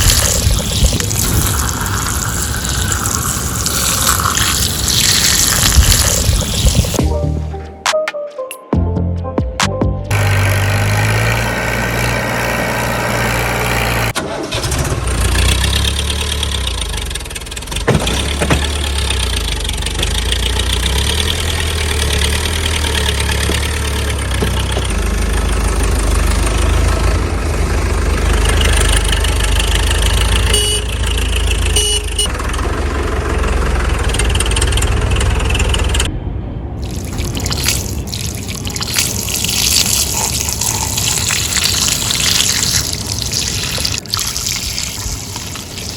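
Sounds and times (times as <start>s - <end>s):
vehicle engine running: 10.1s - 38.8s.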